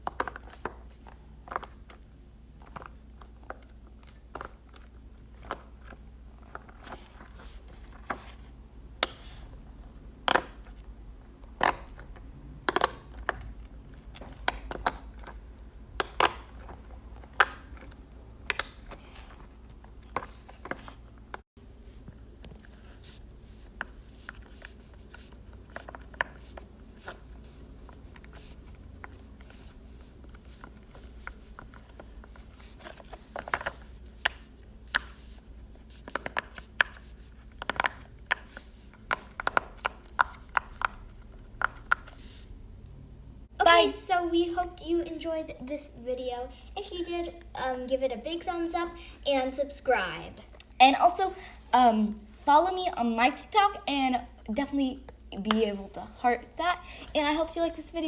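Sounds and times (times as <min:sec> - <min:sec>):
fidget toys clicking: 0:36.0 - 0:42.2.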